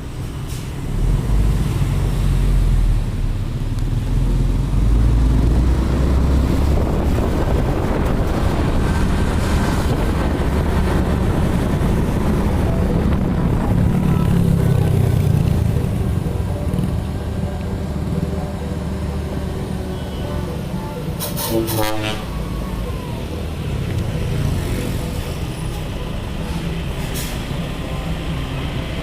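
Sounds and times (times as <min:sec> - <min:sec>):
truck engine rumbling: 0:00.0 - 0:29.0
wind buffeting microphone: 0:05.5 - 0:16.9.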